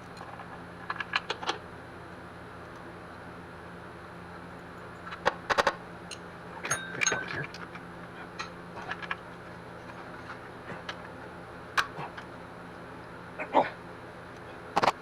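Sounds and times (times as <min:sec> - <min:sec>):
steady low hum: 0:00.0 - 0:15.0
tools and metal parts clinking: 0:05.0 - 0:09.2
metallic ring: 0:06.6 - 0:07.4.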